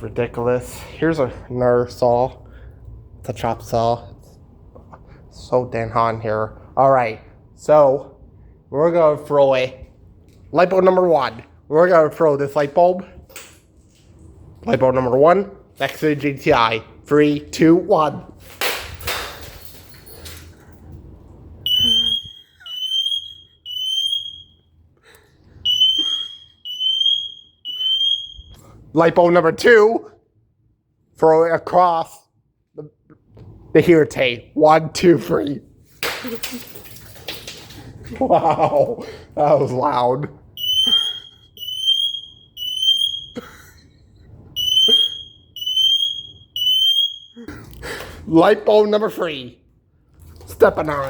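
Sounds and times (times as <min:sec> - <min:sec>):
glass shattering: 0:18.5 - 0:20.6, 0:36.0 - 0:37.8
smoke alarm beeping: 0:21.6 - 0:24.8, 0:25.6 - 0:28.7, 0:40.6 - 0:43.7, 0:44.5 - 0:47.4.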